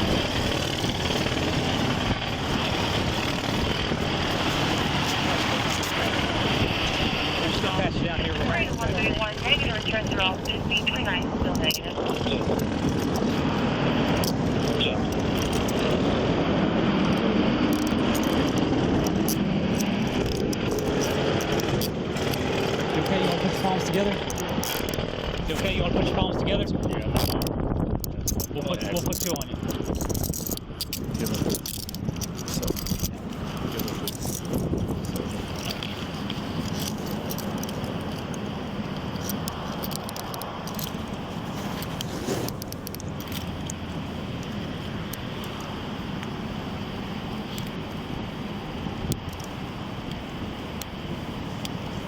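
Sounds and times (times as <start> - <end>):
handcuffs clicking and jangling: 0.0 - 6.2, 12.6 - 16.0, 17.1 - 23.1, 23.9 - 25.5, 27.2 - 44.5, 49.1 - 50.2
engines and road traffic rumble: 0.0 - 52.0.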